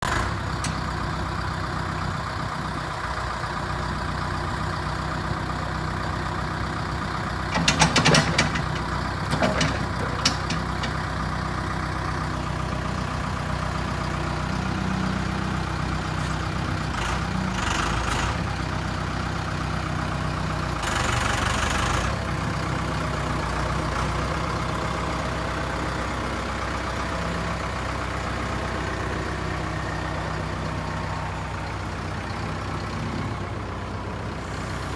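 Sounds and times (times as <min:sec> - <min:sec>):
diesel engine idling: 0:00.0 - 0:34.9
metallic clanks: 0:07.5 - 0:11.2.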